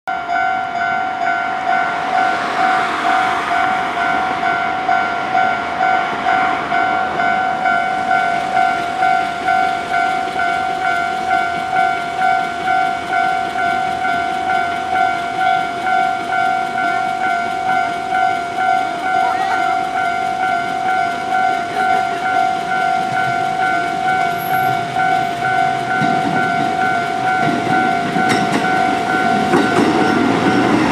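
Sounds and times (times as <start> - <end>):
level-crossing bell ringing: 0.1 - 30.9
rushing noise: 0.5 - 20.3.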